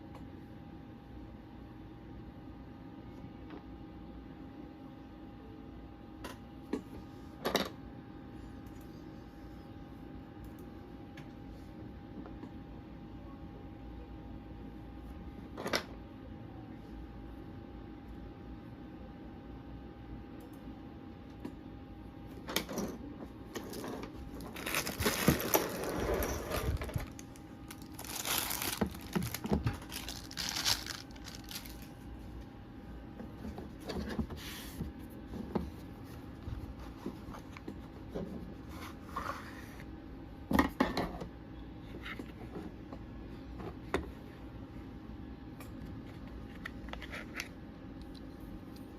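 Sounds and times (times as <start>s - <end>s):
packaging crinkling and tearing: 23.7s - 32.0s.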